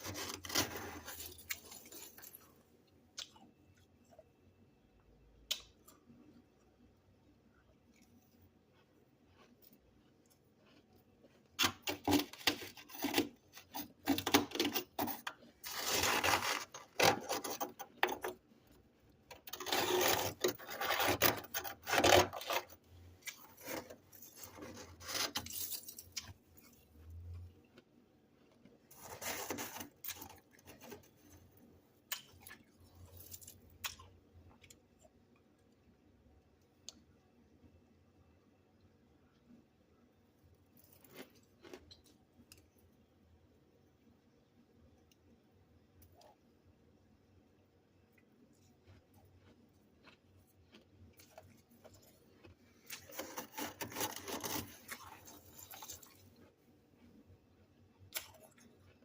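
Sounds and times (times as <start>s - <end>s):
frost being scraped off: 0.0s - 2.0s, 12.0s - 17.8s, 19.5s - 22.7s, 53.1s - 54.8s.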